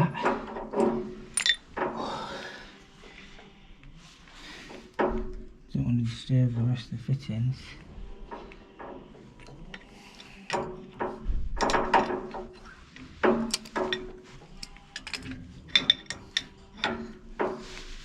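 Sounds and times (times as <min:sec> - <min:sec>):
tools knocking on metal pipes: 0:00.0 - 0:02.3, 0:04.7 - 0:05.6, 0:08.1 - 0:18.0.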